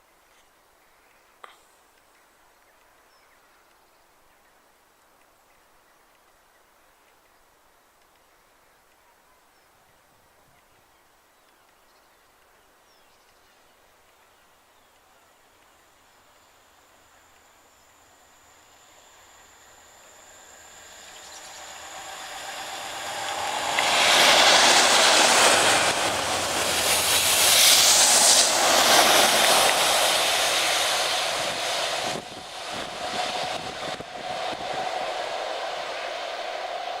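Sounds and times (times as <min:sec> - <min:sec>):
diesel train passing: 0:16.7 - 0:37.0.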